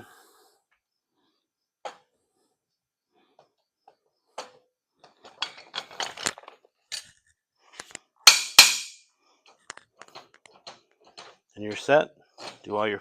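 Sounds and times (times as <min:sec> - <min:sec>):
metal vise knocking and scraping: 0:04.4 - 0:07.1, 0:08.2 - 0:09.0, 0:10.0 - 0:12.8
loud metal clanks: 0:08.3 - 0:09.0.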